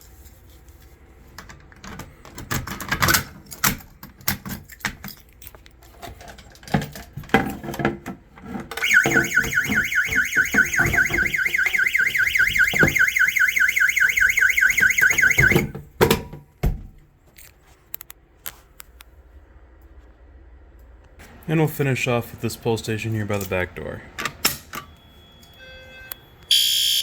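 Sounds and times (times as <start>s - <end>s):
fire alarm warbling tone: 8.8s - 15.7s, 25.4s - 27.0s.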